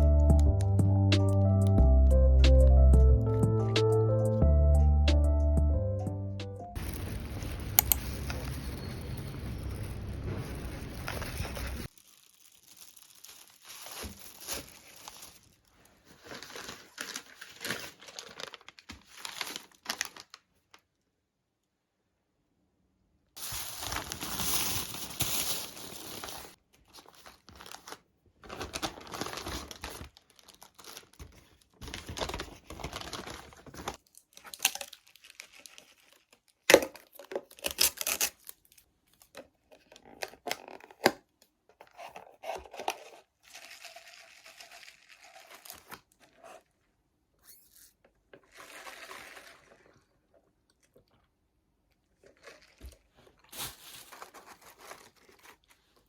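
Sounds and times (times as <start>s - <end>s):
packaging tearing and crinkling: 6.8s - 20.8s, 23.4s - 39.2s, 41.9s - 46.4s, 52.3s - 56.0s.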